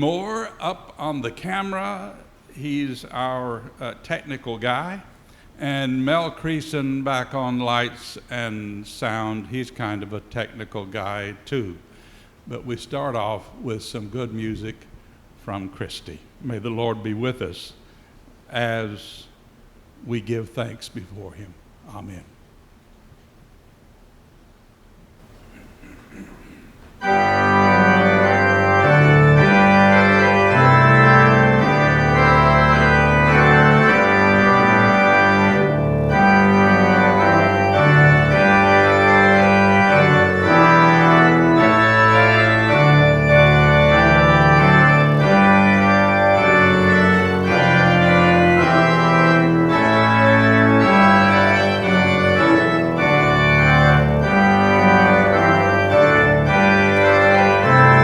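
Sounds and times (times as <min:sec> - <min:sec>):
organ playing chords: 0:00.0 - 0:05.0, 0:05.6 - 0:11.8, 0:25.5 - 0:58.0.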